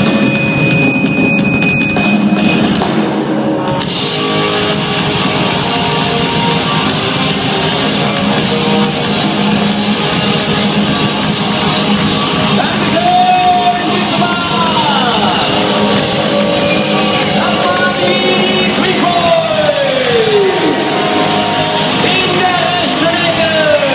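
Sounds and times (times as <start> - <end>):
drums: 0.0 - 23.9
live rock band: 0.0 - 23.9
shouted singing: 12.6 - 23.9.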